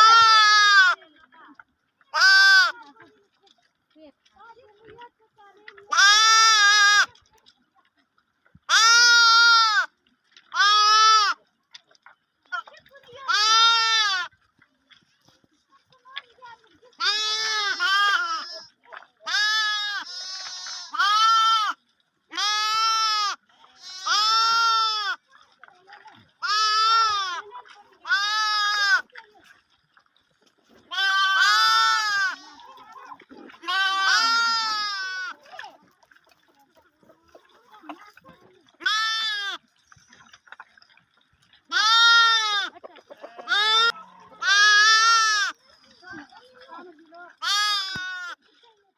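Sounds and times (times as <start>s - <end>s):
lambs bleating: 0.0s - 1.0s, 2.1s - 2.8s, 5.9s - 7.1s, 8.7s - 9.9s, 10.5s - 11.4s, 13.3s - 14.3s, 17.0s - 25.2s, 26.4s - 27.4s, 28.0s - 29.1s, 30.9s - 32.9s, 33.5s - 35.4s, 38.8s - 39.6s, 41.7s - 45.6s, 47.4s - 48.4s.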